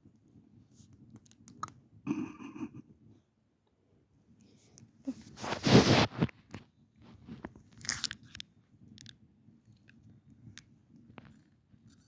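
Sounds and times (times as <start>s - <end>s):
crunchy chewing: 7.4s - 8.4s.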